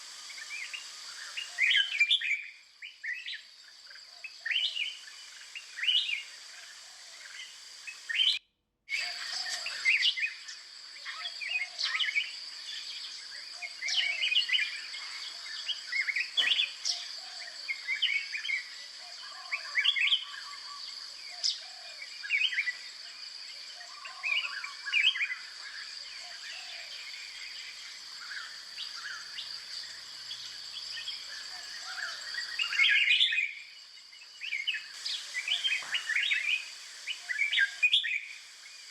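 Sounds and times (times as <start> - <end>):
steady high hiss: 0.0 - 38.9
birds chirping and calling: 7.4 - 22.8, 23.6 - 38.6.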